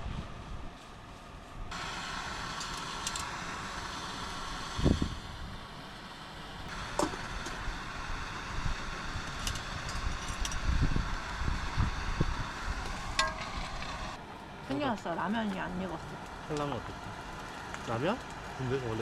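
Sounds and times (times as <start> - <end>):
wind buffeting microphone: 4.7 - 5.6, 6.6 - 14.0.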